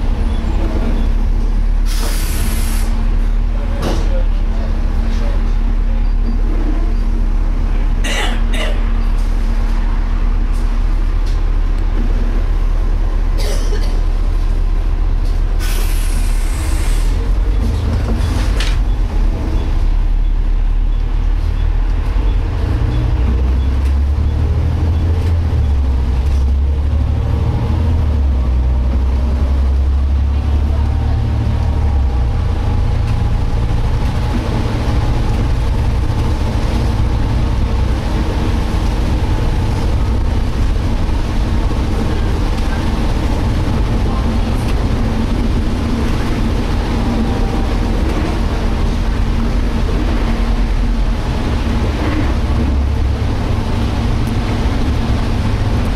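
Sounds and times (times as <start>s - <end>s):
bus drivetrain drone: 0.0s - 55.9s
air brakes hissing: 1.8s - 3.0s, 15.6s - 17.3s.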